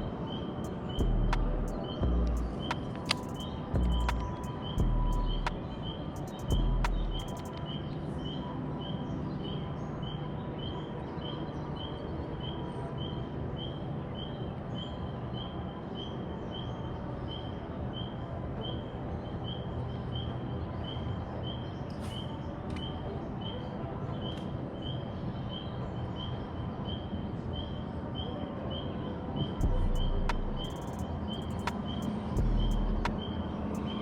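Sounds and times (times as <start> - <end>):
constant low rumble: 0.0 - 11.6, 29.2 - 34.0
high chirp repeating: 1.0 - 7.6.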